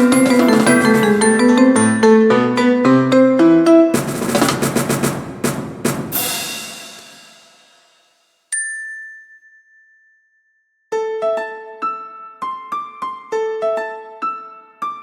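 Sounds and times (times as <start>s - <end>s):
rapid orchestral drum hits: 0.0s - 1.8s, 4.0s - 8.1s
glockenspiel note: 0.0s - 3.3s
cymbal wash: 4.0s - 8.2s.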